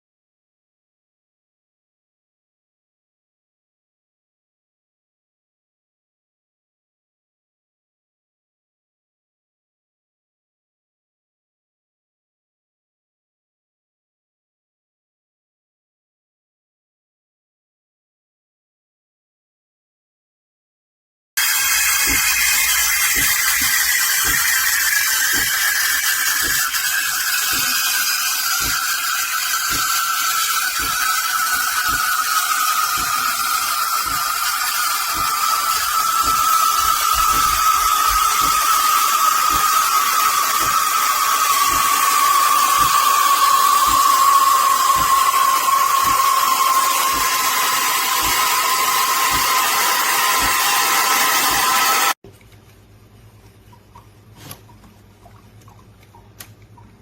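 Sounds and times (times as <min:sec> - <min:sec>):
steam wand hissing: 0:21.4 - 0:52.2.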